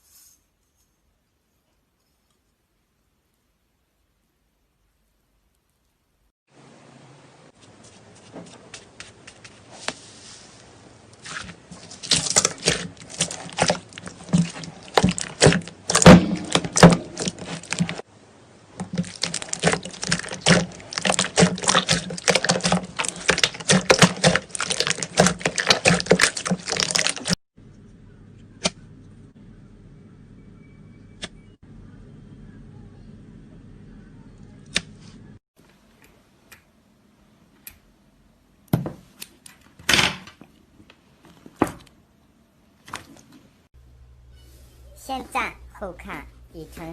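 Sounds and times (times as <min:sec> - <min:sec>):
slime squeezed by hand: 0:18.9 - 0:27.4.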